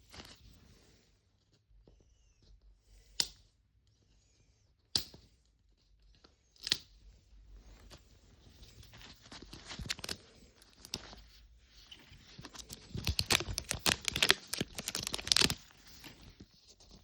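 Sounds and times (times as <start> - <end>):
faint plastic crinkling: 5.8 - 17.0
sharp plastic clicks: 12.4 - 15.6.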